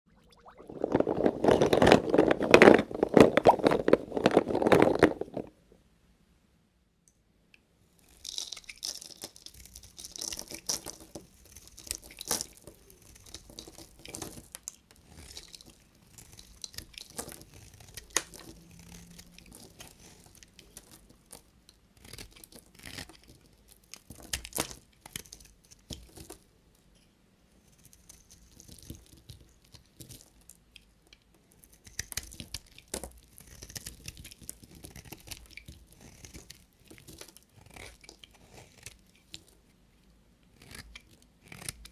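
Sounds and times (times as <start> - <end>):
knife cutting soap: 8.0 - 26.5, 31.6 - 39.8, 40.4 - 41.9.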